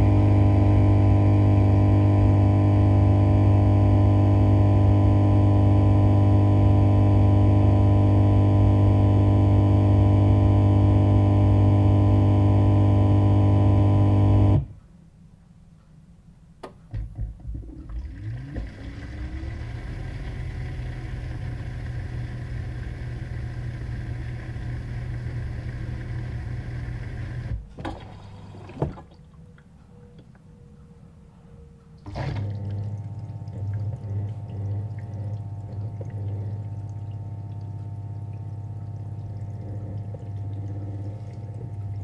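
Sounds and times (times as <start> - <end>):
dishwasher running: 17.0 - 29.2, 32.0 - 42.0.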